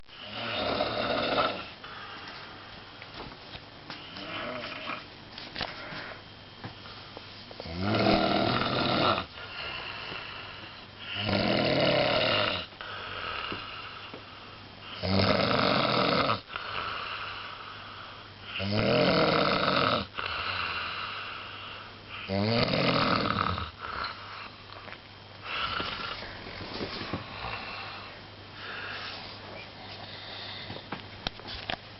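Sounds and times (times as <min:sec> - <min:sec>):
person snoring: 0:00.2 - 0:02.2, 0:04.1 - 0:05.1, 0:07.6 - 0:14.2, 0:14.8 - 0:24.6, 0:25.4 - 0:26.4, 0:27.1 - 0:29.2
quiet breathing: 0:01.5 - 0:02.9, 0:05.6 - 0:07.7, 0:09.2 - 0:11.2, 0:12.6 - 0:15.1, 0:16.4 - 0:18.6, 0:20.0 - 0:22.4, 0:23.7 - 0:31.0.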